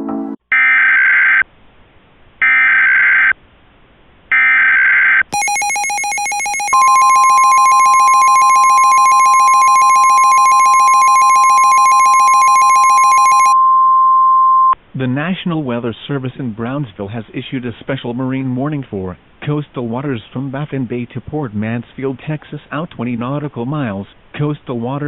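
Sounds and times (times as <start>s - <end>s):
steady alert tone: 5.4s - 13.6s
two-tone attention signal: 5.4s - 14.8s.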